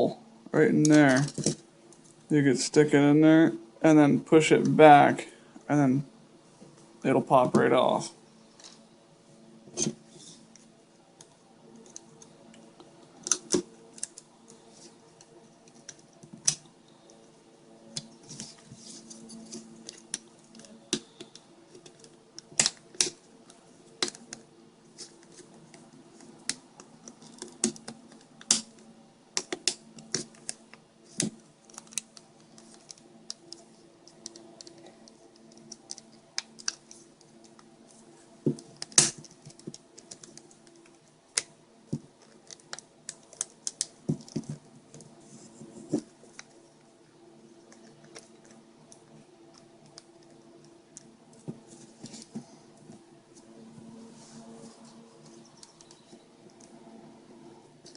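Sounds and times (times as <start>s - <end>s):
faint steady hum: 0.0s - 57.9s
plastic parts clicking: 29.4s - 37.6s.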